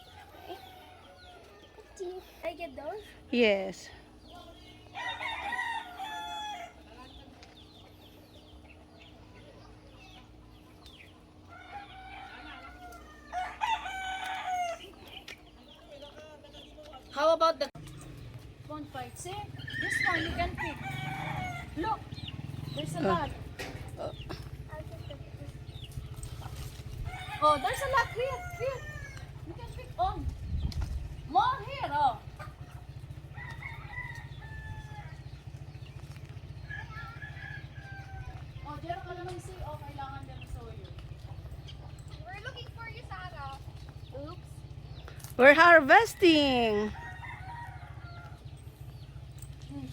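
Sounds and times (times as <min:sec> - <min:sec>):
rooster crowing: 0:05.0 - 0:06.8, 0:11.5 - 0:15.0, 0:19.6 - 0:22.0, 0:27.0 - 0:29.4, 0:33.2 - 0:35.3, 0:36.6 - 0:38.6, 0:46.7 - 0:48.6
low rumble: 0:28.9 - 0:36.6.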